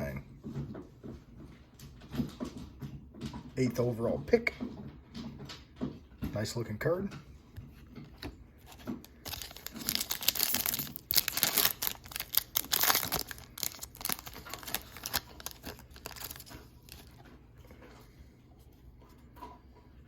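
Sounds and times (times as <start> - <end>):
light clicks and rustles: 4.4 - 20.0
foil wrapper tearing and crinkling: 9.0 - 17.2.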